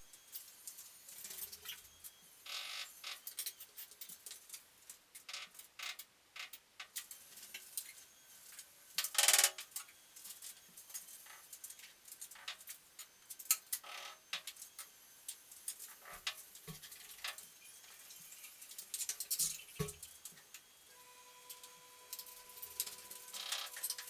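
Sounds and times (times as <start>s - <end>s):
faint steady tone: 20.8s - 24.0s.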